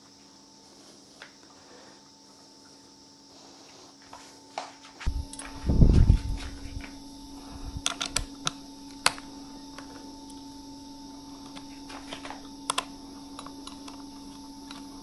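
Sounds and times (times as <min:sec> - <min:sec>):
steady low hum: 0:00.0 - 0:15.0
small tools clicking and tapping: 0:07.8 - 0:10.5, 0:11.3 - 0:15.0.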